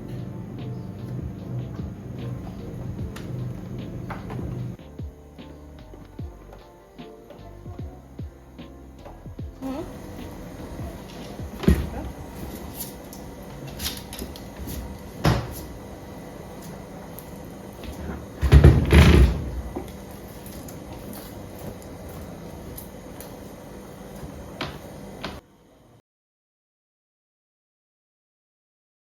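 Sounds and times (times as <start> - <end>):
household knocks and clunks: 17.9 - 19.9.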